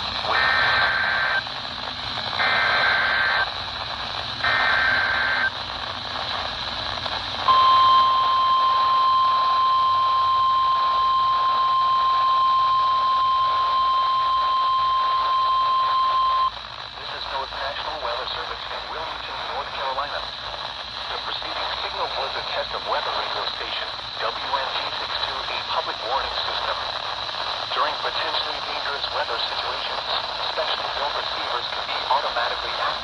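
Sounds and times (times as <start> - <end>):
radio static hiss: 0.0 - 33.0
digital data bursts warbling: 0.3 - 1.4, 2.4 - 3.5, 4.4 - 5.5
steady warning alarm tone: 0.3 - 1.5, 2.4 - 3.5, 4.4 - 5.5, 7.4 - 16.5.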